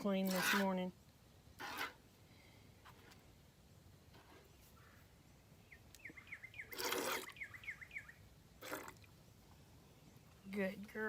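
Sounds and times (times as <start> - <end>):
small bird chirping: 4.6 - 8.2.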